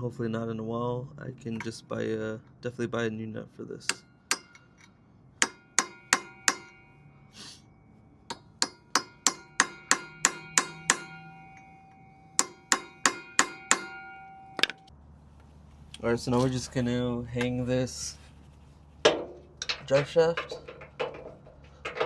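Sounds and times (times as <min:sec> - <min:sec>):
hammer tapping metal punch: 0:03.8 - 0:07.3, 0:08.2 - 0:14.9.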